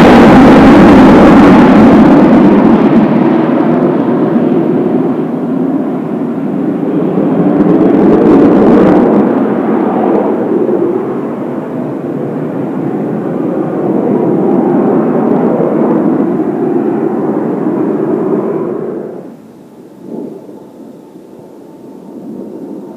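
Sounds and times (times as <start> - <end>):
jet aircraft flying over: 0.0 - 22.9.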